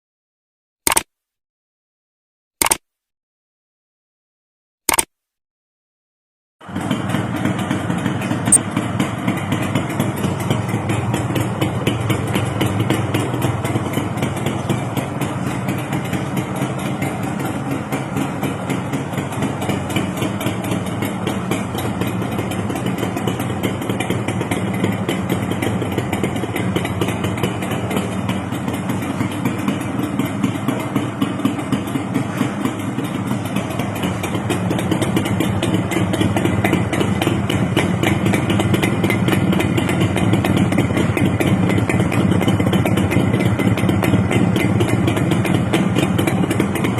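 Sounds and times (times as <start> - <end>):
sharp click: 0.9 - 1.1, 2.6 - 2.9, 4.9 - 5.2
two-stroke motorcycle idling: 6.6 - 46.9.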